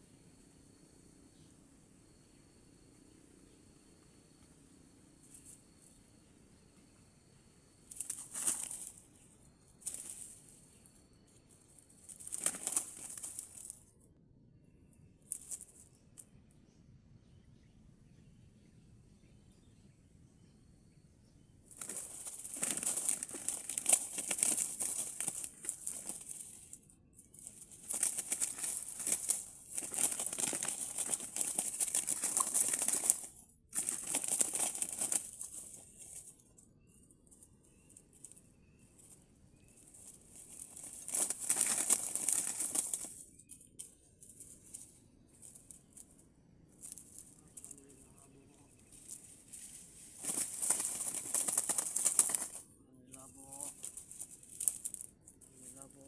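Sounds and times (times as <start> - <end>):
bird wings flapping: 7.9 - 13.8, 21.7 - 36.4, 37.9 - 46.2, 46.8 - 52.6, 53.4 - 55.9.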